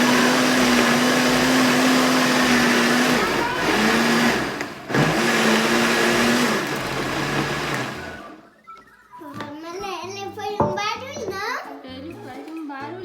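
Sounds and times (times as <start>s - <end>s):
blender motor running: 0.0s - 8.5s.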